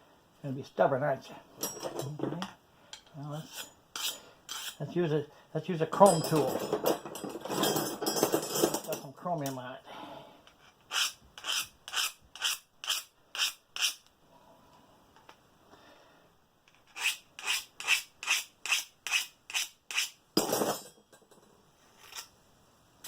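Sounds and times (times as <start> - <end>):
scissor blade rasping against metal: 3.4 - 4.8, 10.9 - 14.0, 16.9 - 20.2.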